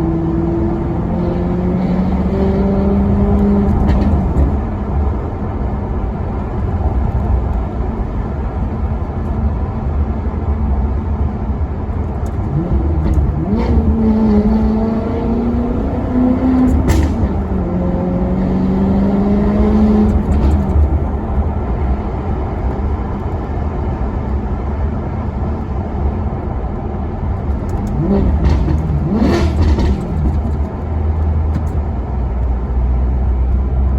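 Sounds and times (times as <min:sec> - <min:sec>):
car engine rumbling and revving: 0:00.0 - 0:33.9
exhaust cracks: 0:02.1 - 0:06.5, 0:12.2 - 0:23.0, 0:27.4 - 0:31.9.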